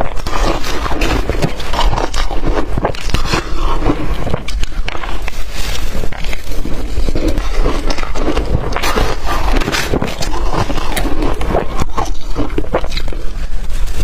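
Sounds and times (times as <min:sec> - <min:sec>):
ice crunching while chewed: 0:00.0 - 0:14.0.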